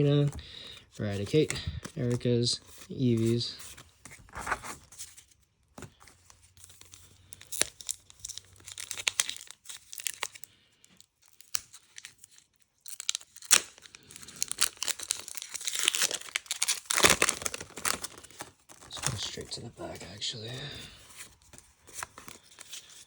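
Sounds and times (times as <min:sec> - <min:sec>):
cards being handled: 0:00.0 - 0:10.4, 0:11.3 - 0:23.0
foil wrapper tearing and crinkling: 0:06.6 - 0:19.5.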